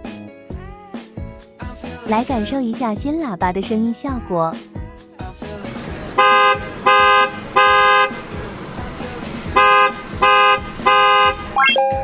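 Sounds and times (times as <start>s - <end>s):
two-tone car horn blasts: 6.2s - 8.4s, 9.5s - 12.0s.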